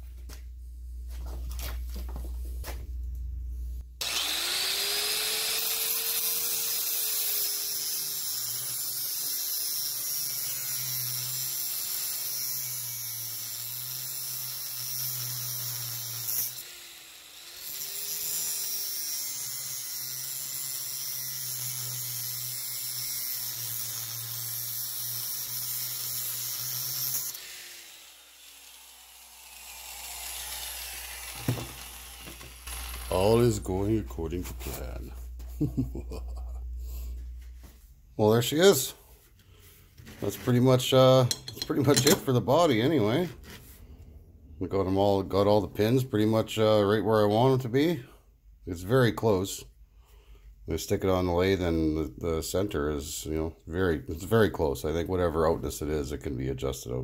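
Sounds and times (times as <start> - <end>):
electric drill boring metal: 4.0 - 33.5.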